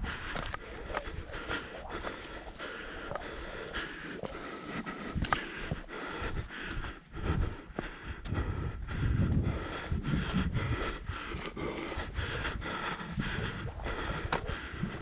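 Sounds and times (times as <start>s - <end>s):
footsteps on a trail: 0.0s - 15.0s
panting breath: 0.0s - 15.0s
wind rumble on microphone: 0.0s - 15.0s.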